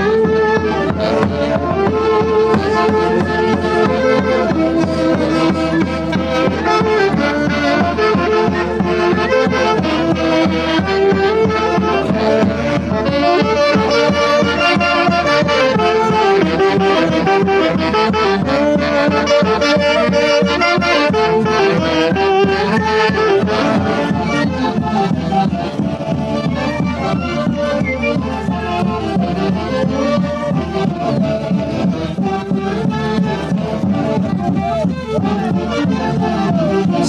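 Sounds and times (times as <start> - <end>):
saxophone band playing lively melody: 0.0 - 37.0.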